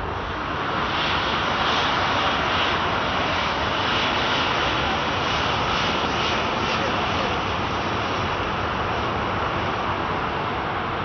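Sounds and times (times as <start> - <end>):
jet engines at takeoff: 0.0 - 11.0.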